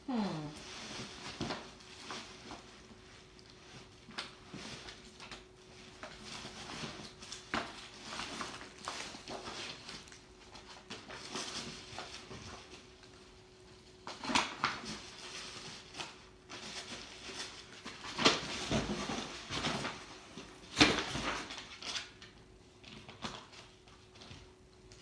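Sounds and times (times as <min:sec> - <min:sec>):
gift wrapping rustling and crinkling: 0:00.1 - 0:25.0.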